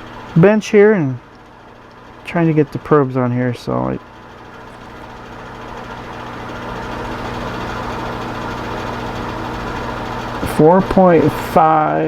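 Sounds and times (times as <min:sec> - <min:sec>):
fan noise: 0:00.0 - 0:12.0
room heater humming: 0:00.0 - 0:12.0.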